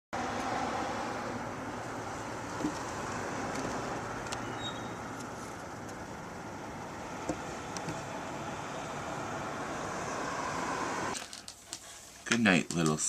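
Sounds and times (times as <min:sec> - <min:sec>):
steady background hum: 0:00.9 - 0:12.5.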